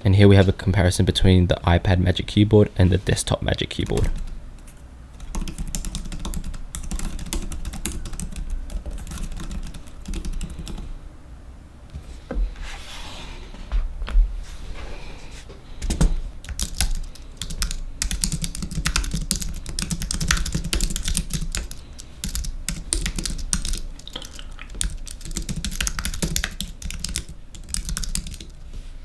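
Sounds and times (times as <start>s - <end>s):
keyboard typing clicks: 3.8s - 10.8s, 15.8s - 28.6s.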